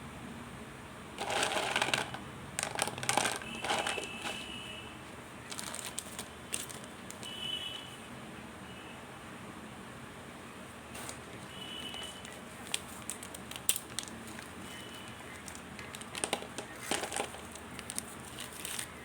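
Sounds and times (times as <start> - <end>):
packaging crinkling: 1.2 - 4.6, 5.4 - 7.4, 11.0 - 19.0.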